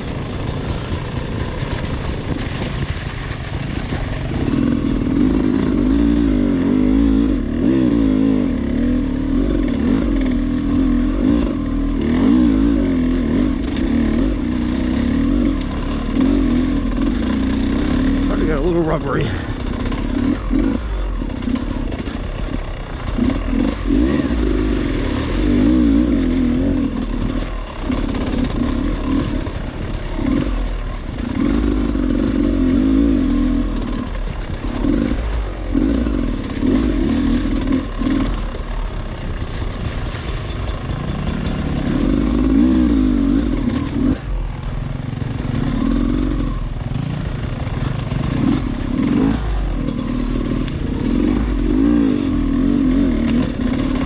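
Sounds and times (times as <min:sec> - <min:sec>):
bike clattering over rough ground: 0:00.0 - 0:54.0
dirt bike engine revving: 0:00.0 - 0:54.0.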